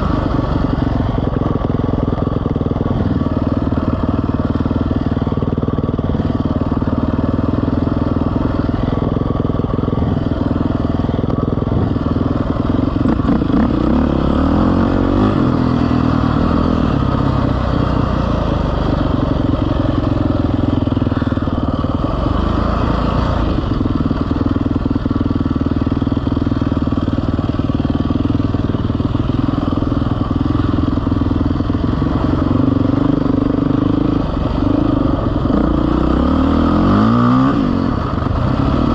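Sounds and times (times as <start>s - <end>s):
vehicle engine revving: 6.1s - 24.4s, 31.7s - 38.9s.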